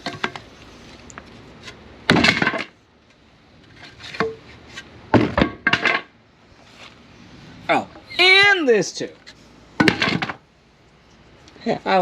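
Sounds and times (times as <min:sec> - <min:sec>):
wooden pieces clattering and knocking: 0:02.1 - 0:02.8, 0:03.7 - 0:06.1, 0:09.8 - 0:10.4.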